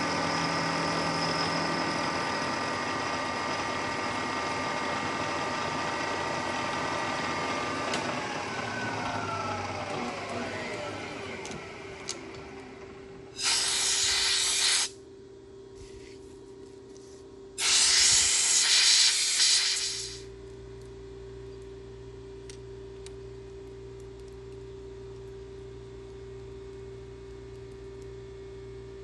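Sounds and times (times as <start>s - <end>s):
shop machinery tone: 0.0s - 15.0s
air blow gun hissing: 13.3s - 15.0s, 17.6s - 20.3s.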